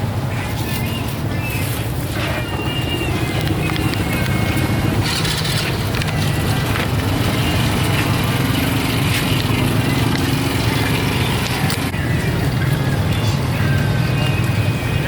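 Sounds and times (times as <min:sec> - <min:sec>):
engine humming: 0:00.0 - 0:15.0
street noise: 0:00.0 - 0:15.0.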